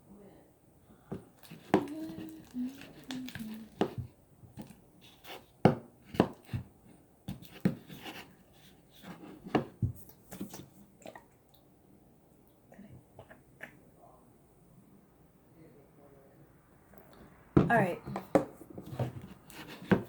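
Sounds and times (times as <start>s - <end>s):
utensil stirring thick slime: 1.2s - 6.7s, 7.3s - 10.7s, 17.8s - 20.0s
knocks and scrapes against bowl: 17.6s - 20.0s.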